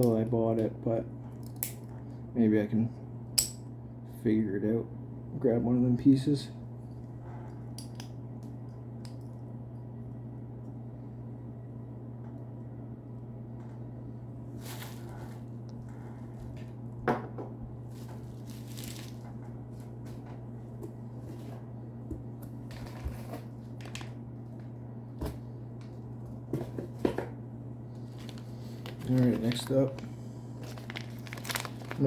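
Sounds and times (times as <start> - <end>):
steady low hum: 0.0 - 32.0
objects rustling on a table: 14.5 - 16.7, 17.8 - 21.7.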